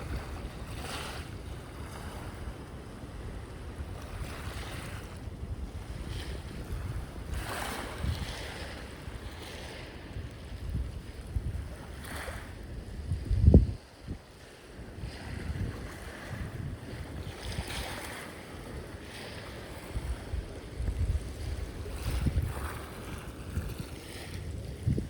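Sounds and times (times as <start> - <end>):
wind buffeting microphone: 0.0 - 25.0
sea waves washing: 13.8 - 25.0.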